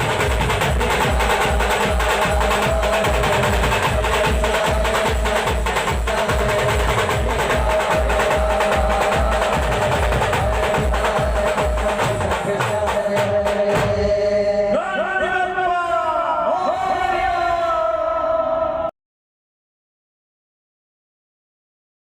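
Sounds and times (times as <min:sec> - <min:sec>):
band music with fast drum beat: 0:00.0 - 0:14.4
man shouting: 0:14.7 - 0:18.9.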